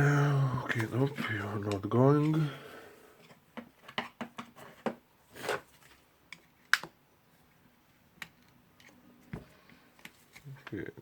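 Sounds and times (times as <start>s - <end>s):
small clicks and knocks of parts: 8.1s - 11.0s.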